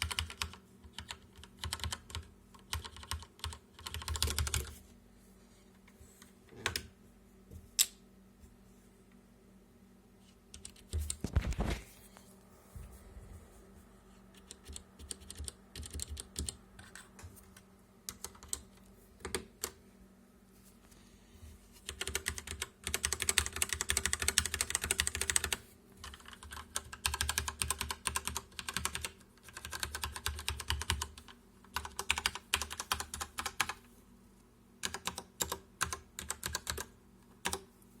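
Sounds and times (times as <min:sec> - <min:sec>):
mechanical keyboard typing: 0:00.0 - 0:04.8, 0:14.4 - 0:17.1, 0:18.1 - 0:19.8, 0:21.8 - 0:33.8, 0:34.8 - 0:37.7.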